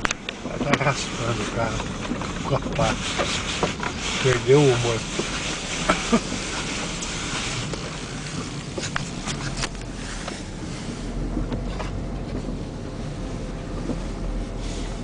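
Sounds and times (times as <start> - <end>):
low outdoor rumble: 0.0 - 15.0
snow shovel scraping: 2.8 - 10.4.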